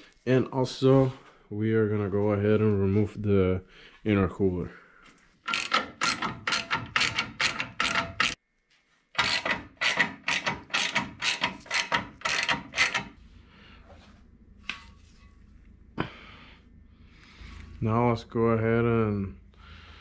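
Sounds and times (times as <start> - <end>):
ratchet wrench clicking: 5.5 - 8.4, 9.2 - 13.2.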